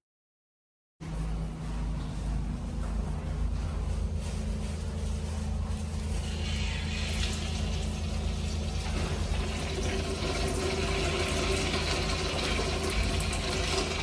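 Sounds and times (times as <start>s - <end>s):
steady low hum: 1.0s - 14.0s
toilet flushing: 6.0s - 14.0s.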